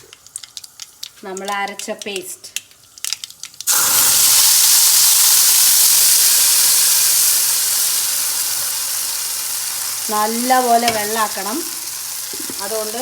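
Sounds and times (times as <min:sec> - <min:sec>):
paste sizzling in hot oil: 0:02.8 - 0:13.0.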